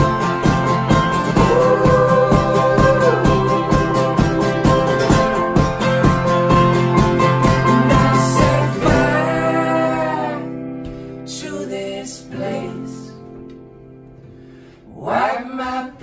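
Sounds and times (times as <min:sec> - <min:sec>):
folk-rock band playing: 0:00.0 - 0:11.2
guitar chord ringing: 0:00.0 - 0:11.3.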